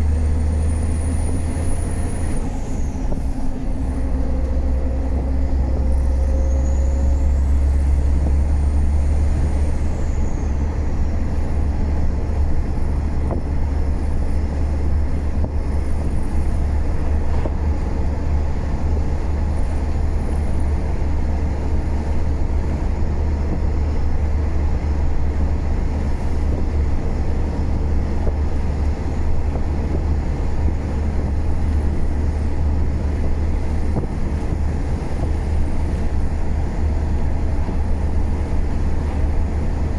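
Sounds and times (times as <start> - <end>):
truck diesel engine rumbling: 0.0 - 39.9.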